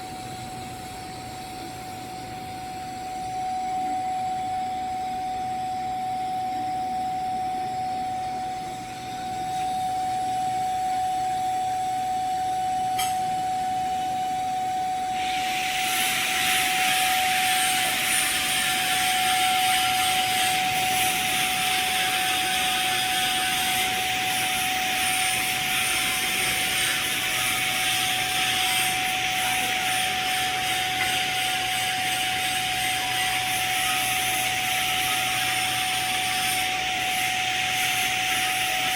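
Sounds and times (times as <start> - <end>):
constant high whine: 0.0 - 38.9
welding arc hissing: 15.1 - 38.9.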